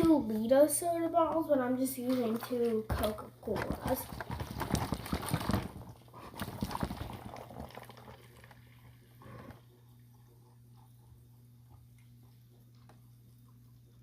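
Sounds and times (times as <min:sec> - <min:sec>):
water sloshing in plastic bottles: 0:02.0 - 0:09.7
plastic bottles knocking: 0:02.9 - 0:08.2.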